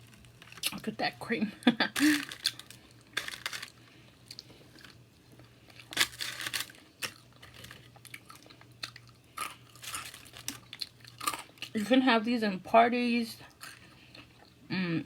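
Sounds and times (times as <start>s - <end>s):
crisp crunching: 2.0s - 11.7s.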